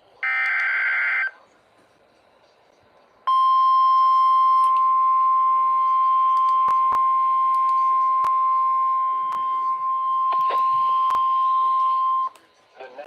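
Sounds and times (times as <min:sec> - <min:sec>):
steady high alarm tone: 0:03.3 - 0:12.3.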